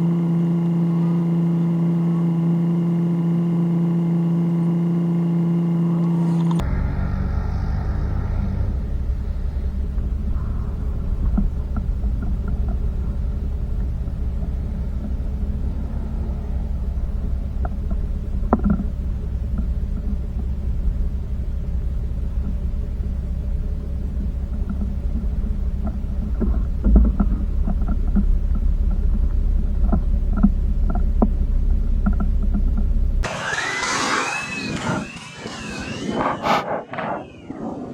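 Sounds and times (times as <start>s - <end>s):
vehicle low rumble: 0.0s - 37.9s
knocks and rattles: 6.6s - 33.2s.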